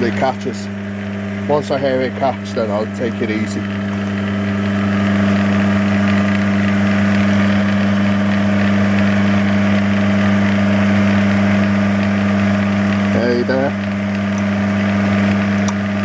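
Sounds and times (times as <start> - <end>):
metal lathe motor humming: 0.0 - 16.0.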